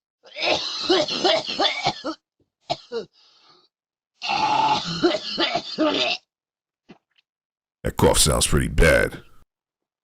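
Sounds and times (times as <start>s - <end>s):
man coughing hard: 0.4s - 3.1s.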